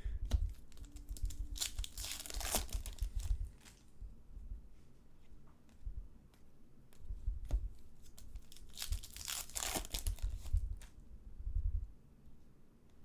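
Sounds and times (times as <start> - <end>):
foil wrapper crinkling and tearing: 0.5 - 3.8, 8.0 - 10.9.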